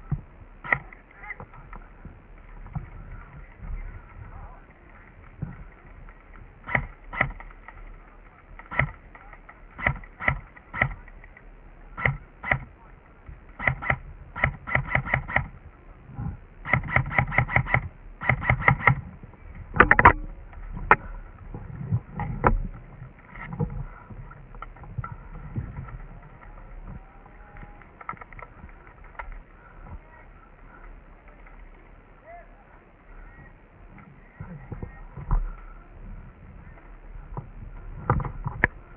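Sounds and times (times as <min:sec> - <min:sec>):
airsoft guns firing: 0:06.6 - 0:07.8, 0:08.6 - 0:11.1, 0:12.0 - 0:12.7, 0:13.5 - 0:15.6, 0:16.6 - 0:19.1
loud crack: 0:06.6 - 0:11.2.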